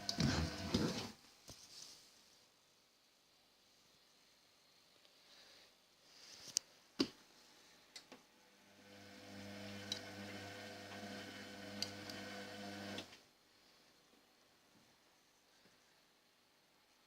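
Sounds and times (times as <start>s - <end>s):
washing machine electric hum: 0.0s - 1.2s, 8.6s - 13.1s.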